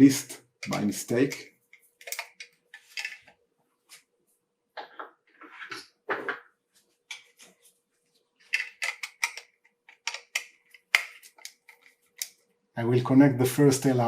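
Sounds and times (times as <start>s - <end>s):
screwdriver clicking on switch terminals: 1.7s - 2.6s, 8.5s - 12.4s.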